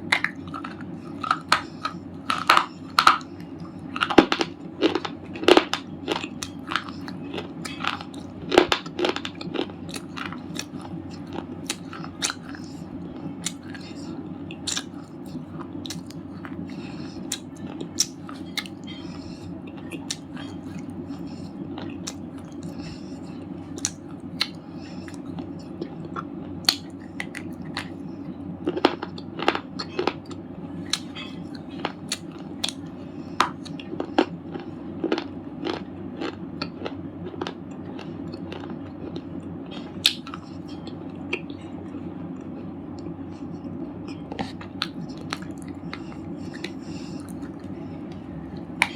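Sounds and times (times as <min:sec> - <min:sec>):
steady low hum: 0:00.0 - 0:48.9
slate chips crunching in mouth: 0:00.1 - 0:19.1, 0:33.5 - 0:40.7.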